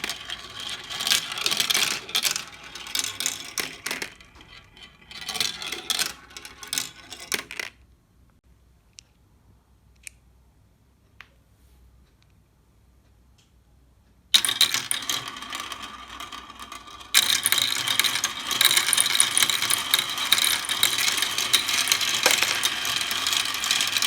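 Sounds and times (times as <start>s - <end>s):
glass marbles clattering: 0.0s - 7.5s, 14.4s - 24.0s.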